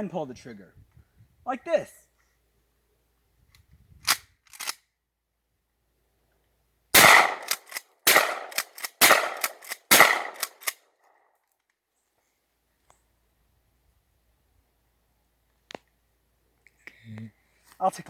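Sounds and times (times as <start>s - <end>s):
shotgun shots with echoes: 7.0s - 10.5s.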